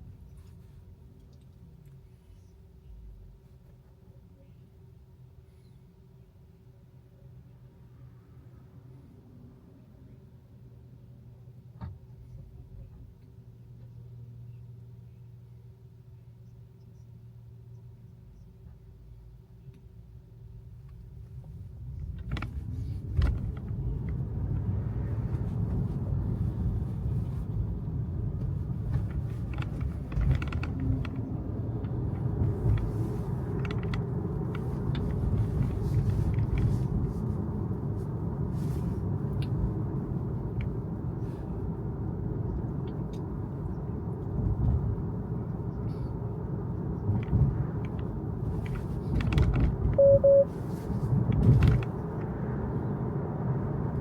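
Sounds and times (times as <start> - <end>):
tyre and road noise in car: 20.4 - 54.0.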